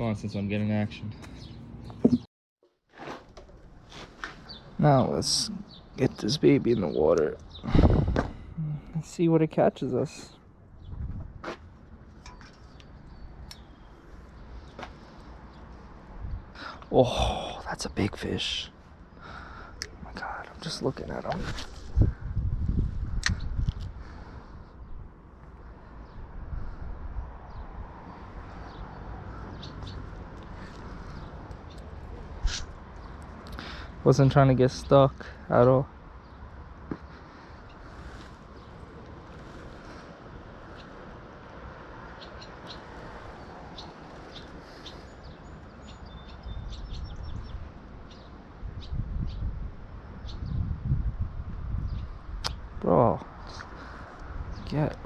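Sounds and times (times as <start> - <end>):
small birds chirping: 0.0 - 2.3, 4.3 - 11.2, 11.9 - 55.0
low rumble on microphone: 10.7 - 11.4.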